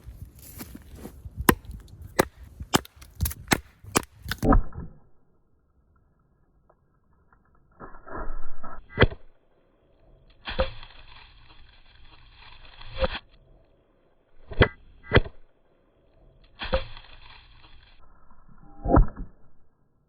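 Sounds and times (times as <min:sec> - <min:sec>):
axe chopping wood: 0:00.6 - 0:04.5.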